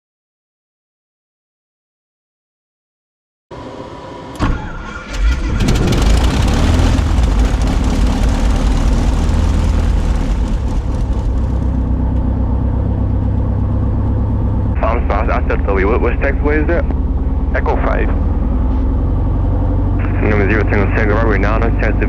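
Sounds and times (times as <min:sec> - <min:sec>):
aircraft engine idling: 0:03.6 - 0:22.0
starter cranking: 0:04.8 - 0:12.2.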